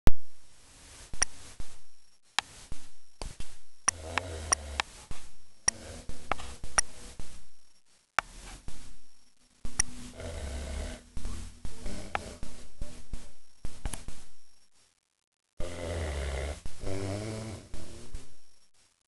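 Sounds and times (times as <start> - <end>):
sharp clicks: 3.2 - 4.9
dog snoring: 3.9 - 5.0, 5.7 - 7.2, 9.8 - 13.3, 15.6 - 18.4.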